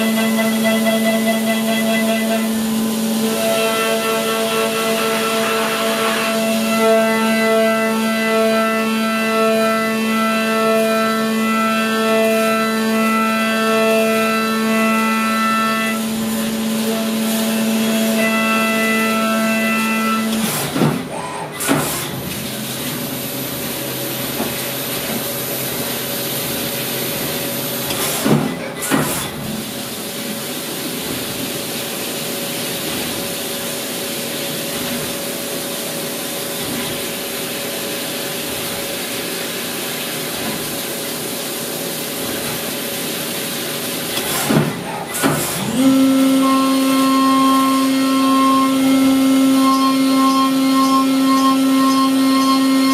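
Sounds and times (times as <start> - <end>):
steady machine tone: 0.0 - 10.4, 45.6 - 52.9
spindle whine: 45.6 - 52.9.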